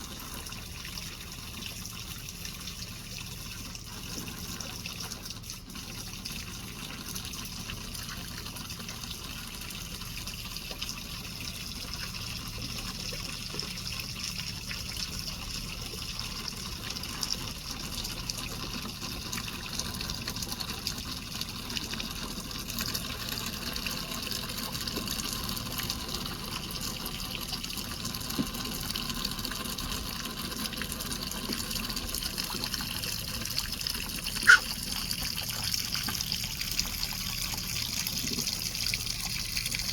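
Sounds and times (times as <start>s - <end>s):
water trickling and splashing: 0.0s - 39.9s
sharp squeak: 34.4s - 34.7s.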